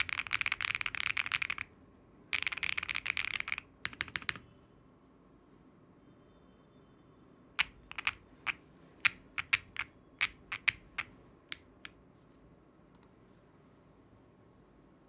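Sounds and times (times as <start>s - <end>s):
mechanical keyboard keystrokes: 0.0s - 1.7s, 2.4s - 4.4s, 7.6s - 8.2s, 9.0s - 11.6s.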